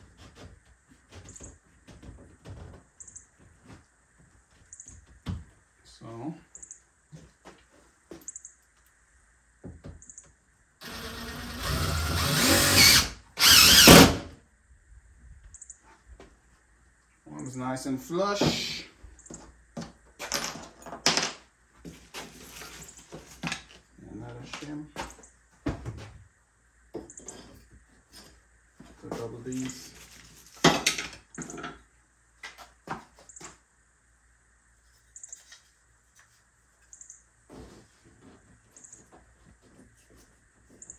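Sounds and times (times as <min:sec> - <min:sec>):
power drill driving a screw: 0:10.8 - 0:14.3.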